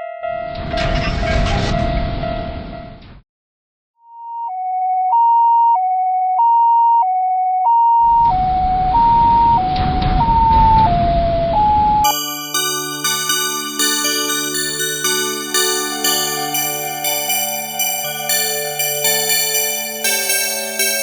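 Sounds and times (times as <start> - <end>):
two-tone ambulance siren: 4.2 - 21.0.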